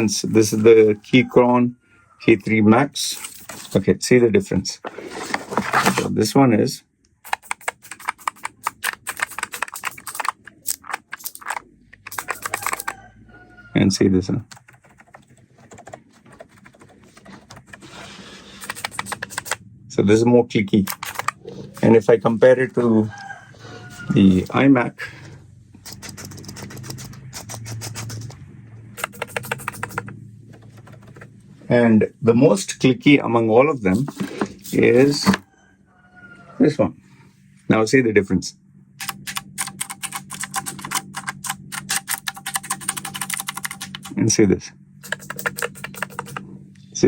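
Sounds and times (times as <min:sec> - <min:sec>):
fast keyboard typing: 0:07.2 - 0:13.0, 0:14.4 - 0:18.0, 0:18.6 - 0:19.6, 0:20.8 - 0:22.5, 0:25.8 - 0:31.4, 0:39.0 - 0:44.2, 0:45.0 - 0:46.4
faint low hum: 0:09.1 - 0:47.0.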